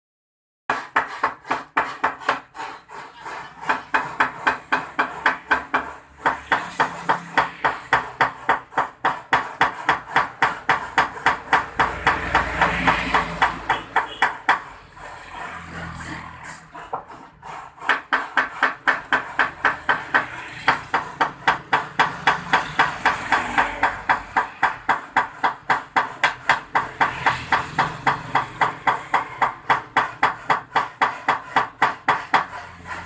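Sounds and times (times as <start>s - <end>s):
rapid strokes on a radiator: 29.6s - 33.0s.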